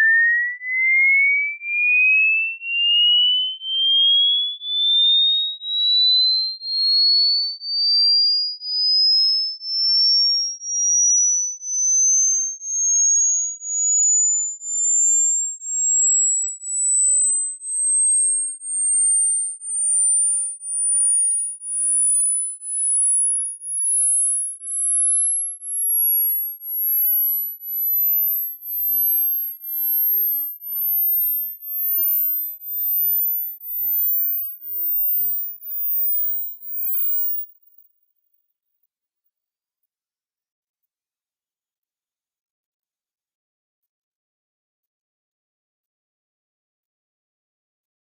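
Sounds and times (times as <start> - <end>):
rising sine-wave beeps: 0.0 - 38.3.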